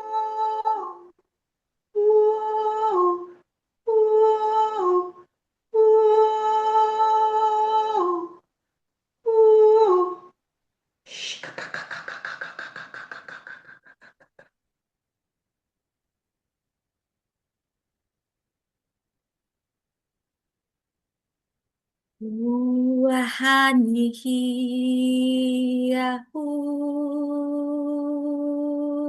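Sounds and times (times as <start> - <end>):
rapid pulsing vocal trill: 11.1 - 14.4
person humming long notes: 22.2 - 23.1.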